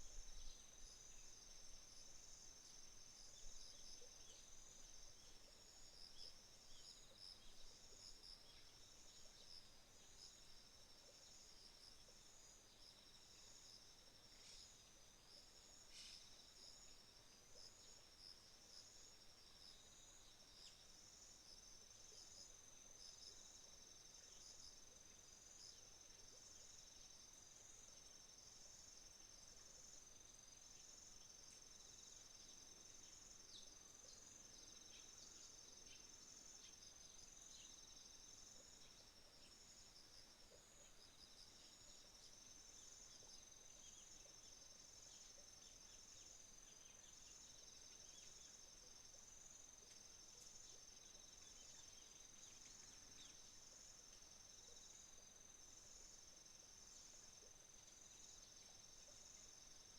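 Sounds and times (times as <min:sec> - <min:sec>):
insects trilling: 0:15.7 - 0:17.0.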